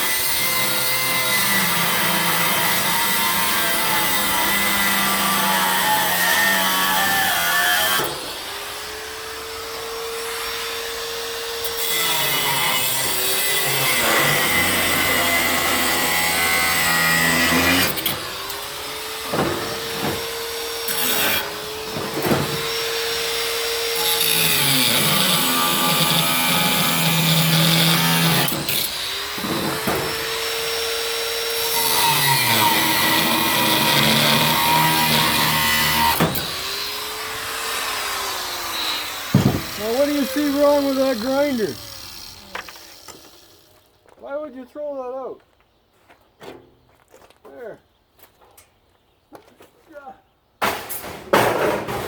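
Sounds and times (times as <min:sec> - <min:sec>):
angle grinder cutting metal: 0:00.0 - 0:43.8
sharp knocks: 0:19.3 - 0:20.3, 0:39.3 - 0:39.8.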